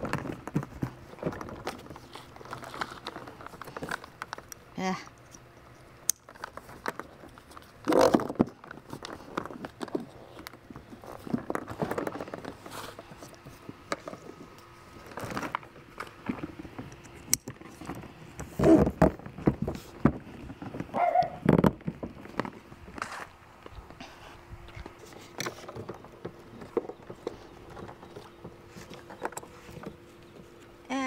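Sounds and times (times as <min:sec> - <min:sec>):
plastic bumps: 0:06.3 - 0:13.2, 0:15.0 - 0:23.3.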